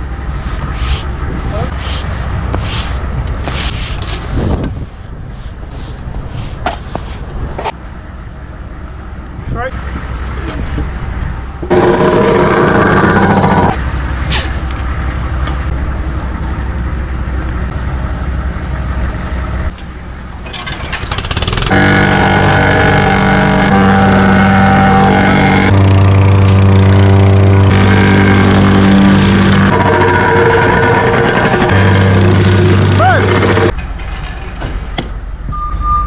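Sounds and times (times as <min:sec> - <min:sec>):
vehicle engine rumbling: 0:00.0 - 0:36.0.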